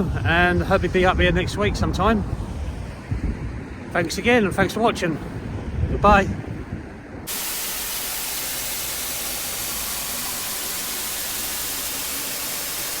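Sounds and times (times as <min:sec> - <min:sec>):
static hiss: 0:07.3 - 0:13.0.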